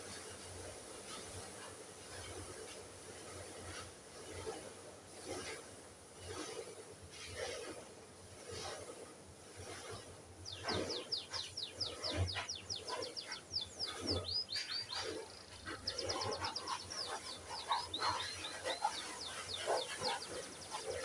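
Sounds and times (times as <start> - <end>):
canary chirping and trilling: 10.5 - 21.0.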